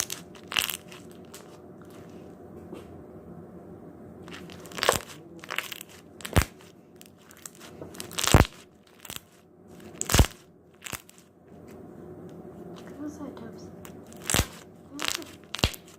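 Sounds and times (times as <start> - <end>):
slime squeezed with wet pops: 14.1 - 15.9.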